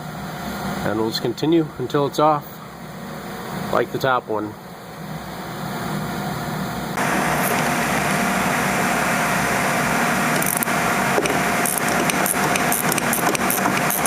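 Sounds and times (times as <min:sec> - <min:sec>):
power tool running with whine: 0:07.0 - 0:14.0
sharp metallic clicks: 0:07.4 - 0:07.8, 0:10.3 - 0:14.0.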